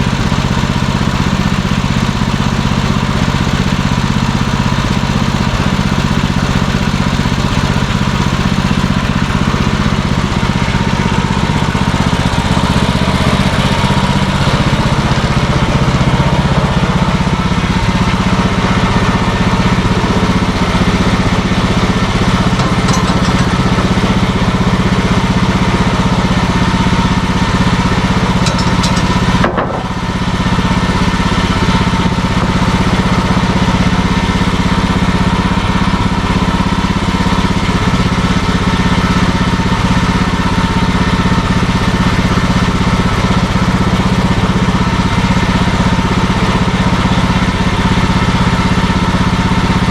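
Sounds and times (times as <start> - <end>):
sawmill engine running: 0.0 - 49.9.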